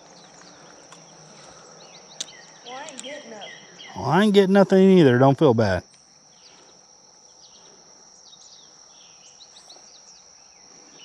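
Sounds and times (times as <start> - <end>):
bird chirps: 0.0 - 4.2
insect drone: 0.0 - 11.0.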